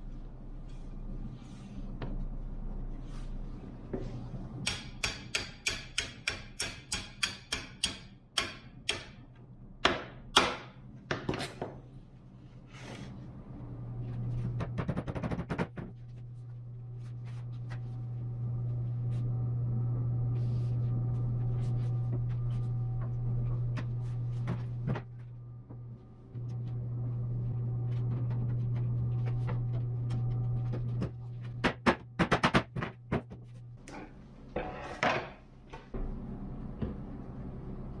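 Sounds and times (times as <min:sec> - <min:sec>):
machine hum: 0:12.1 - 0:38.0.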